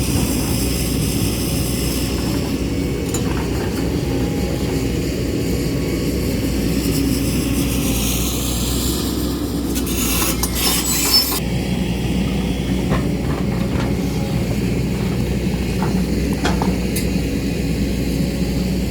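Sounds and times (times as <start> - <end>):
excavator diesel engine running: 0.0 - 18.9
harsh high scraping: 9.7 - 11.4.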